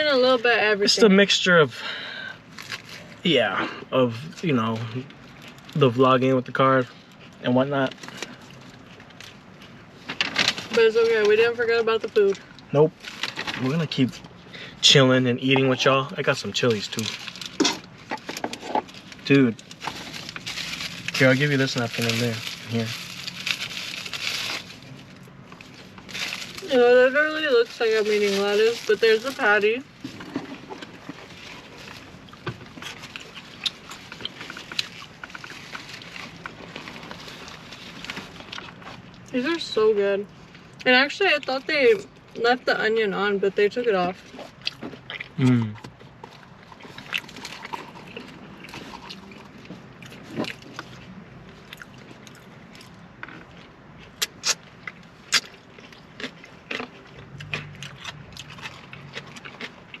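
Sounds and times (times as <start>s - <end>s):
crisp chewing crunches: 15.6s - 39.4s, 44.1s - 60.0s
wrapper crinkles and clicks: 16.7s - 25.0s
wet mouth clicks: 54.2s - 54.7s, 55.3s - 55.6s.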